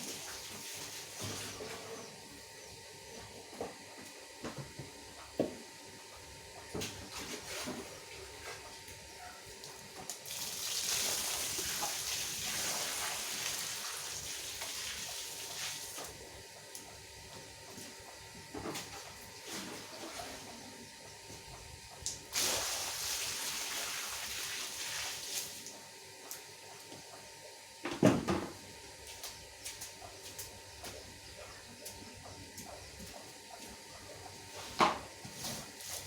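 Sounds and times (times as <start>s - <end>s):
hiss of water: 10.3s - 16.0s, 22.3s - 25.7s.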